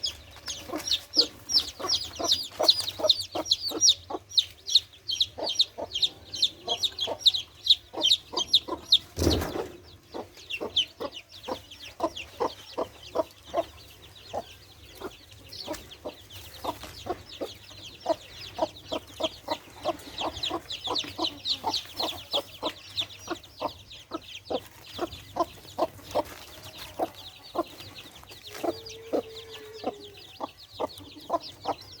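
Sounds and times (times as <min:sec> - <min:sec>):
chicks peeping: 0:00.0 - 0:32.0
hen clucking: 0:00.0 - 0:32.0
brief thump: 0:09.2 - 0:09.8.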